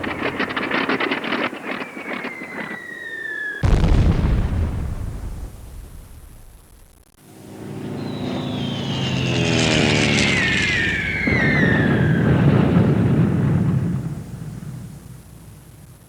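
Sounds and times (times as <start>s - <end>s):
bomb explosion rumbling: 0.0s - 1.5s, 3.6s - 16.0s
aircraft engine drone: 0.0s - 4.1s, 5.0s - 16.0s
falling bomb whistle: 7.4s - 14.4s.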